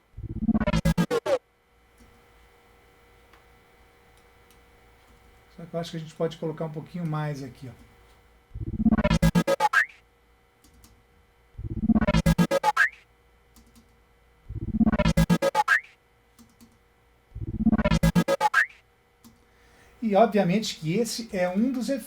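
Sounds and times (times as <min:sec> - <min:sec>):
pulsing synth tones: 0:00.2 - 0:01.4, 0:08.6 - 0:10.0, 0:11.6 - 0:13.0, 0:14.5 - 0:15.9, 0:17.4 - 0:18.8.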